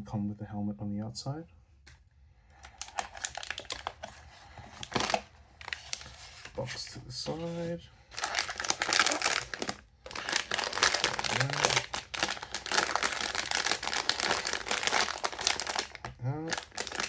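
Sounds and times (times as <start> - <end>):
plastic packaging crinkling: 2.6 - 17.0.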